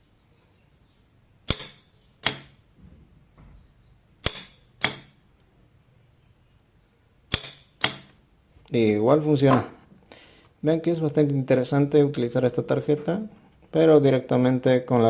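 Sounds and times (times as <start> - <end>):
solenoid lock clacking: 1.5 - 2.6, 4.2 - 5.2, 7.3 - 8.2.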